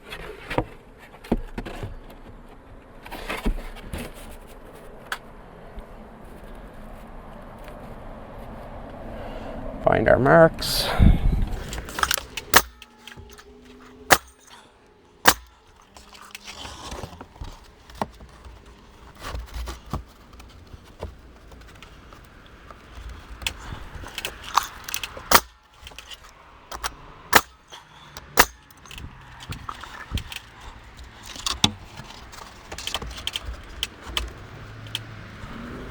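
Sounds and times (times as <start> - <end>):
nail gun firing into wood: 11.6 - 14.6, 15.2 - 18.4, 23.0 - 35.1
handling rattles and knocks: 11.6 - 35.9.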